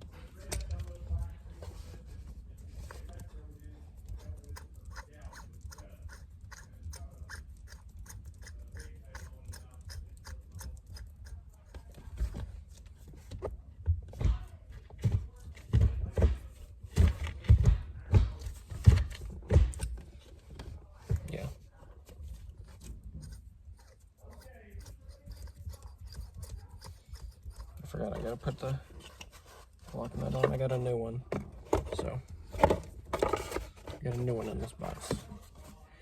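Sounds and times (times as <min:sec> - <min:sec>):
knocks and thuds: 0:13.9 - 0:20.1.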